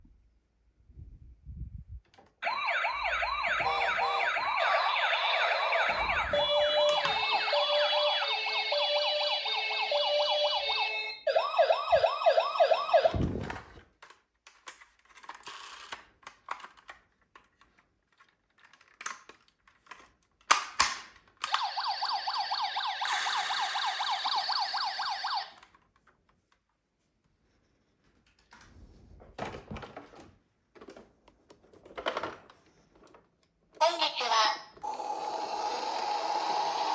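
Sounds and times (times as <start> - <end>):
toy ambulance siren wailing: 2.4 - 13.2, 21.4 - 25.7, 34.8 - 36.9.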